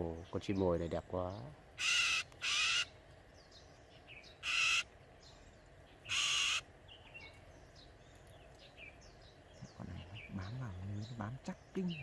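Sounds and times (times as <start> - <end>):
bird harsh rasping screeches: 1.8 - 3.0, 4.4 - 4.9, 6.0 - 6.7.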